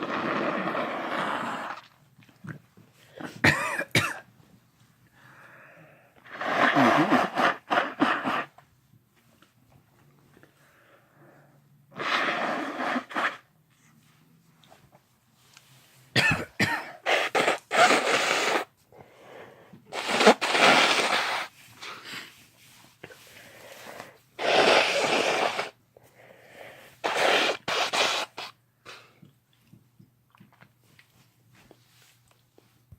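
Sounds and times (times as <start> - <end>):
person coughing or sneezing: 3.1 - 4.3, 16.1 - 18.6.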